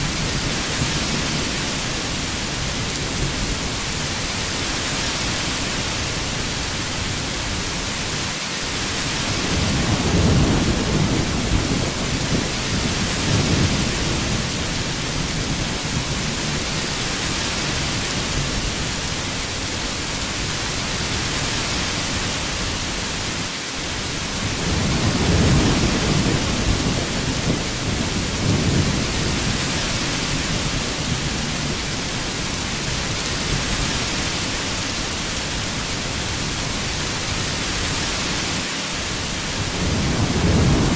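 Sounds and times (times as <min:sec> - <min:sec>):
heavy rain falling: 0:00.0 - 0:40.9
thunder rumbling: 0:09.4 - 0:16.8, 0:24.3 - 0:33.0, 0:39.6 - 0:40.9.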